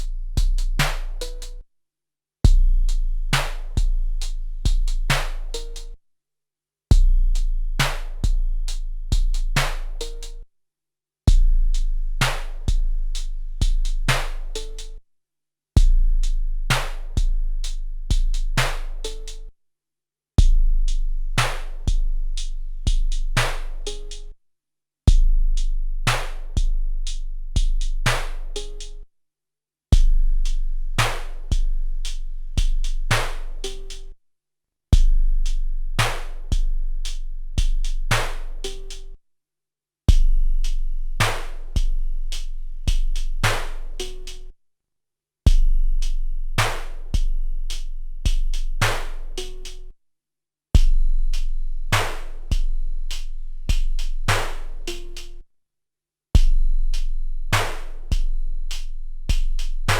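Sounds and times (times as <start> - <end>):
sampled drum pattern: 0.0 - 1.6, 2.5 - 6.0, 6.9 - 10.4, 11.3 - 15.0, 16.7 - 19.5, 20.4 - 24.3, 31.0 - 34.1, 36.0 - 39.1, 40.1 - 44.5, 45.5 - 49.9, 50.8 - 55.4, 56.4 - 59.9.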